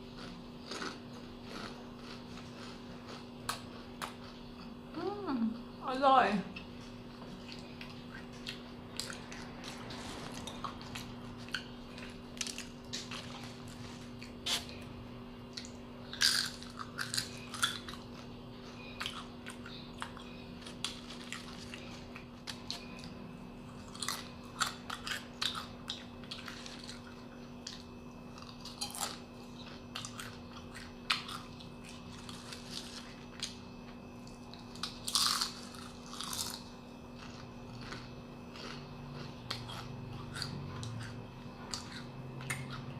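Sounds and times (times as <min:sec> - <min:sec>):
chips being chewed: 0:00.0 - 0:04.7, 0:06.6 - 0:14.8, 0:15.4 - 0:42.9
low hum: 0:00.0 - 0:42.9.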